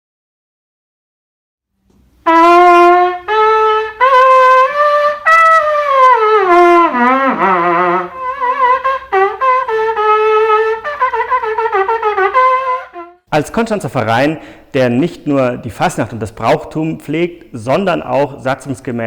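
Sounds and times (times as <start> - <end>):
trumpet playing solo: 2.2 - 13.3.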